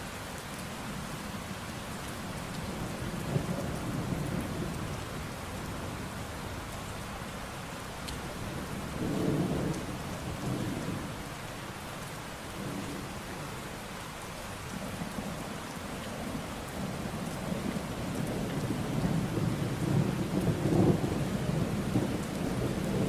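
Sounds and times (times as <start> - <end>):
steady rain falling: 0.0 - 23.0
thunder rumbling: 17.4 - 23.0.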